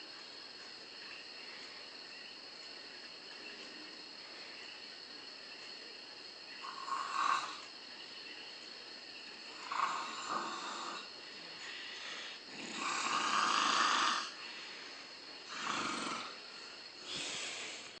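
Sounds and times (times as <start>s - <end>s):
person snoring: 9.6s - 11.1s, 11.9s - 14.4s, 15.5s - 18.0s.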